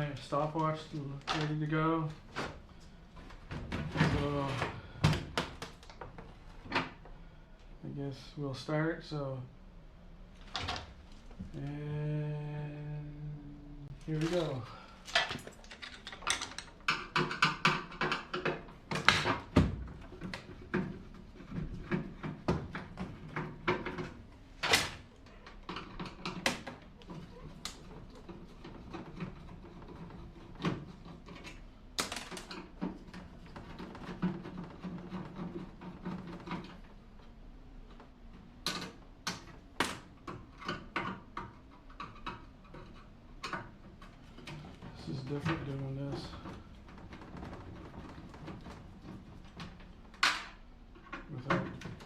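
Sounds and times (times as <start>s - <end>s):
hand tools knocking and clattering: 14.2s - 24.2s.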